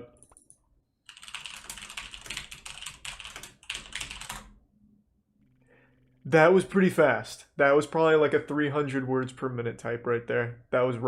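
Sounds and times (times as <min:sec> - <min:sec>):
fast typing on keyboard: 0:01.1 - 0:04.6.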